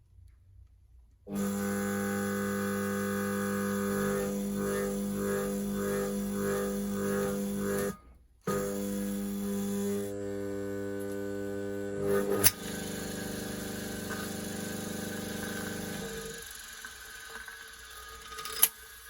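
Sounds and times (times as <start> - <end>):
electric motor humming: 1.3 - 19.0
sharp click: 12.4 - 12.6.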